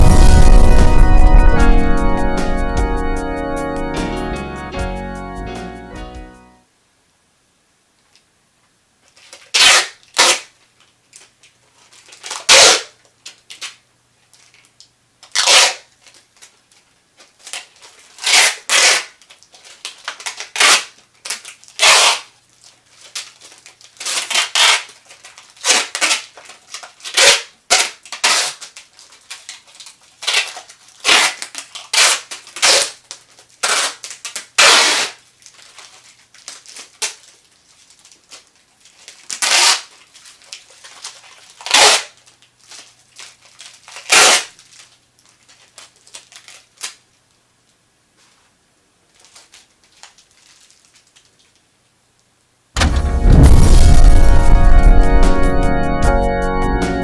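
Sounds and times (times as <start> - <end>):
adhesive tape ripping off roll: 9.1 - 10.6, 12.0 - 13.8, 15.2 - 47.0.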